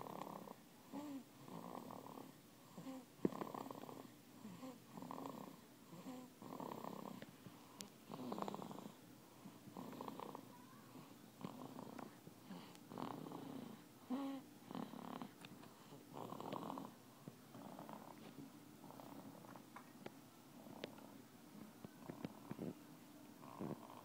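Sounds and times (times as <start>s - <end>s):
baby snoring: 0.0s - 7.2s, 8.1s - 9.0s, 9.7s - 10.5s, 11.4s - 18.2s, 23.4s - 24.0s.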